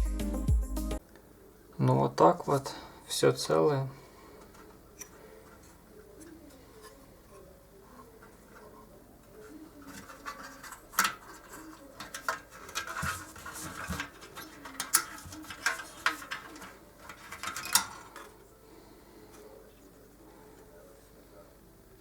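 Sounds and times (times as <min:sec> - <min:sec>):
hands handling electronic parts: 0:04.3 - 0:18.5.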